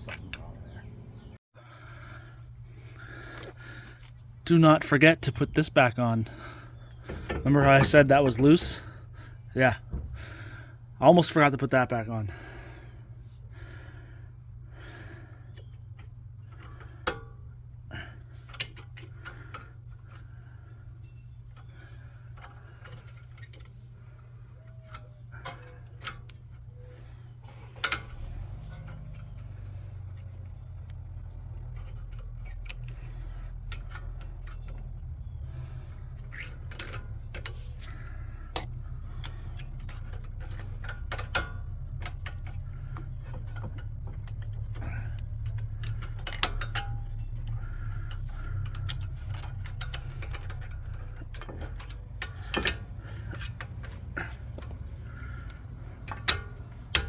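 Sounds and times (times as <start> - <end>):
steady low hum: 0.0 - 57.0
metal tools clinking: 4.7 - 10.0, 17.9 - 57.0.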